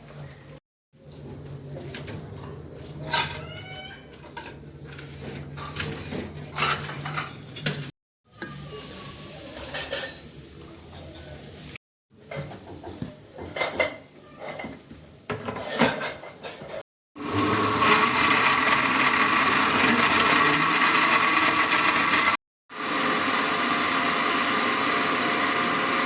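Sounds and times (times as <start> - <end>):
utensils clinking against dishes: 1.9 - 7.9, 9.5 - 10.3, 12.3 - 14.8.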